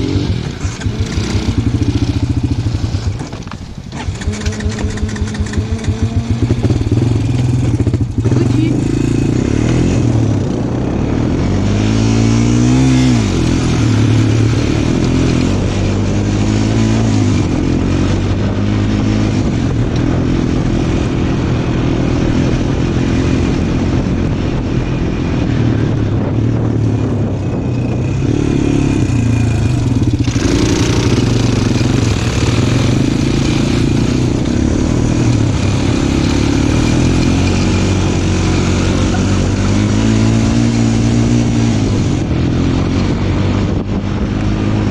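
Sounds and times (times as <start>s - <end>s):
small vehicle engine revving: 0.0s - 44.9s.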